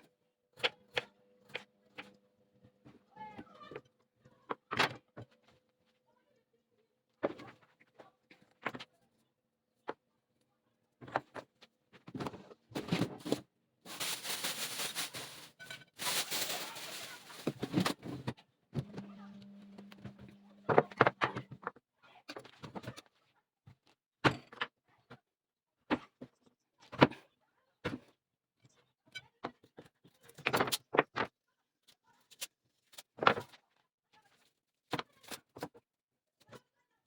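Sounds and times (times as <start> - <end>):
household knocks and thunks: 16.0 - 18.2.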